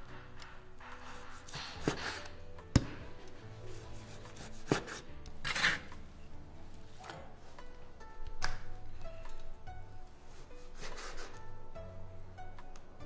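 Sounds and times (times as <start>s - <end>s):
knife slicing raw meat: 4.0s - 6.0s.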